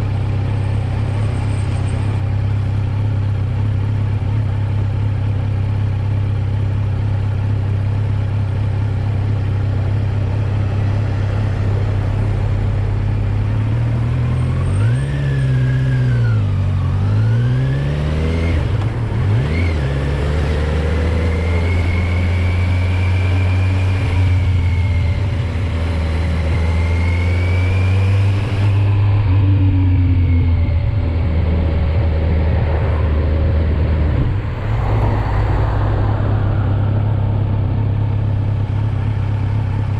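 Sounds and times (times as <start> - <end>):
motorcycle engine revving: 7.9 - 34.8.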